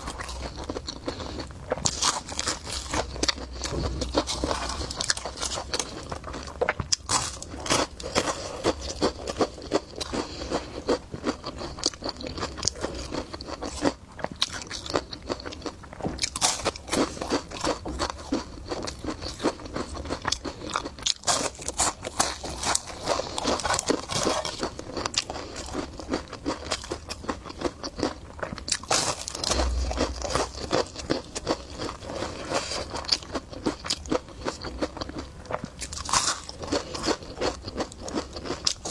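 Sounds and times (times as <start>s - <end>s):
crunching and chewing food: 0.0s - 38.9s.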